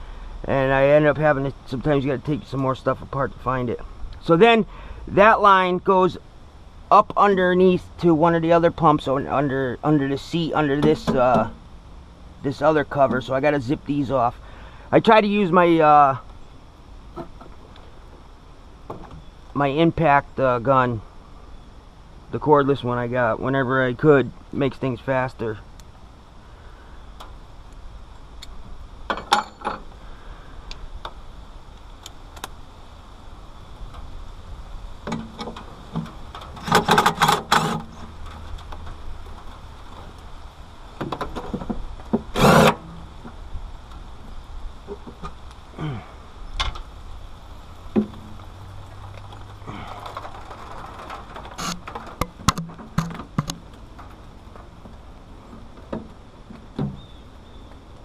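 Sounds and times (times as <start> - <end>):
metal tools clinking: 29.1 - 29.8
tools and parts clicking and knocking: 29.1 - 29.8, 35.1 - 38.1.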